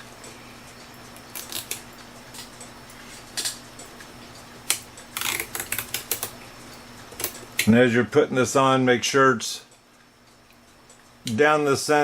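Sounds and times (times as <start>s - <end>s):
zip tie rasping through ratchet: 5.2s - 6.2s.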